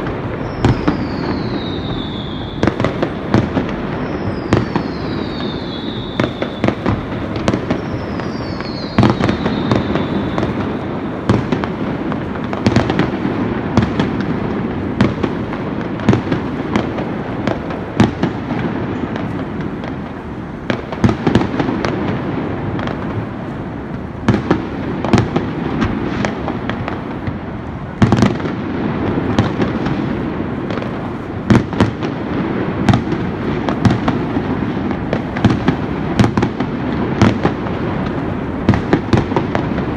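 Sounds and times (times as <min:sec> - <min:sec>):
fireworks crackling and banging: 0:00.0 - 0:39.9
firework whistles falling in pitch: 0:00.3 - 0:11.5.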